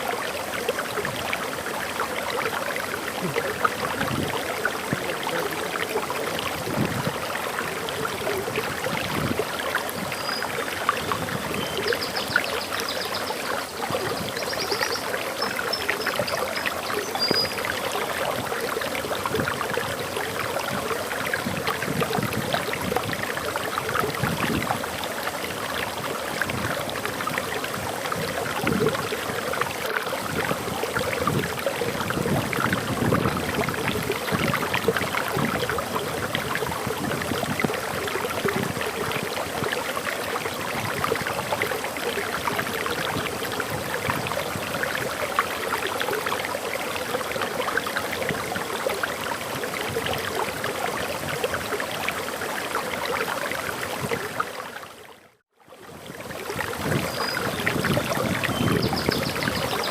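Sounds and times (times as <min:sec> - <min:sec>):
waterfall splashing: 0:00.0 - 0:15.9
bird chirping and trilling: 0:17.1 - 0:17.6, 0:57.0 - 0:57.6.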